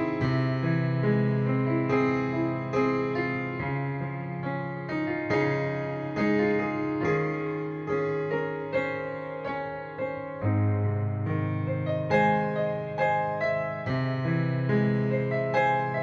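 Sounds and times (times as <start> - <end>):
gentle keyboard melody: 0.0 - 16.0.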